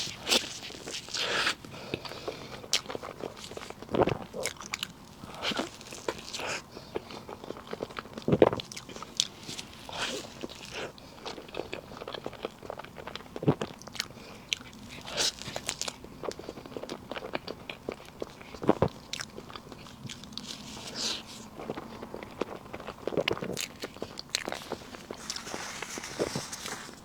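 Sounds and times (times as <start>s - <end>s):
person chewing soft cake: 0.0s - 27.0s.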